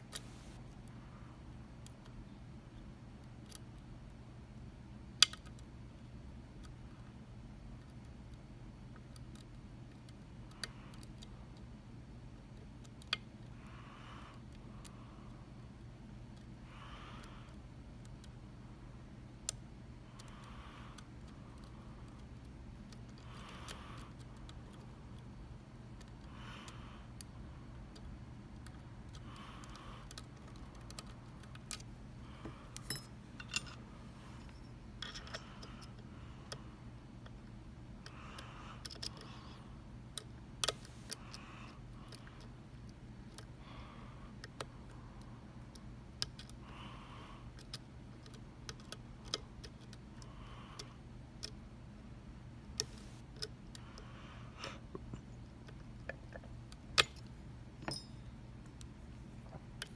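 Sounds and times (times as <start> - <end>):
lock picks clicking: 34.4 - 36.0, 55.6 - 58.9.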